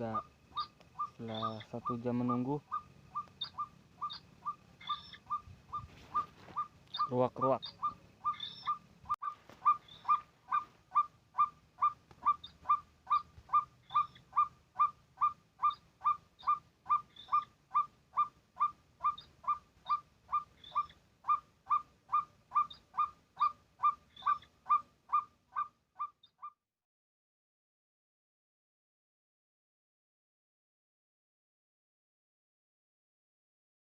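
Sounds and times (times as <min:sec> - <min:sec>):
waterhen calling: 0:00.0 - 0:26.2.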